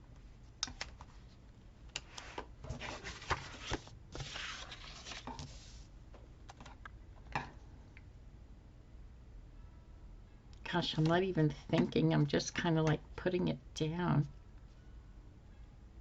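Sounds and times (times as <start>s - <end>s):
paper rustling and rubbing: 2.2s - 5.9s.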